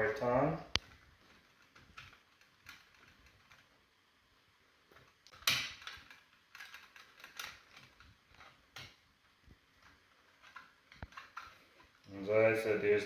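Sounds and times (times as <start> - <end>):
wire nut twisting clicks and scrapes: 0.7 - 3.9, 4.9 - 12.2.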